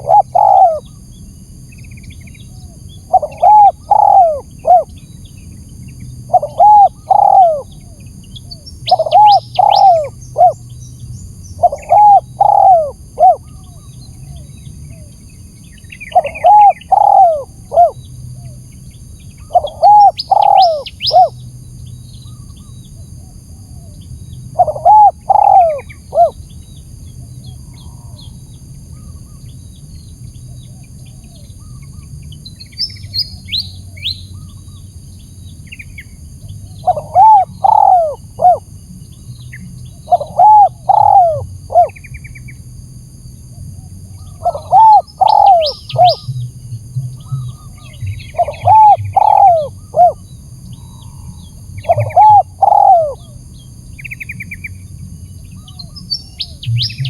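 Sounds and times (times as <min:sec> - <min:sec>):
dove cooing: 0:00.0 - 0:01.0, 0:02.5 - 0:05.0, 0:06.3 - 0:10.7, 0:11.6 - 0:15.1, 0:16.0 - 0:18.6, 0:19.4 - 0:21.4, 0:23.2 - 0:26.4, 0:36.6 - 0:38.7, 0:39.3 - 0:42.0, 0:43.8 - 0:53.4
small birds chirping faintly: 0:00.0 - 0:57.0.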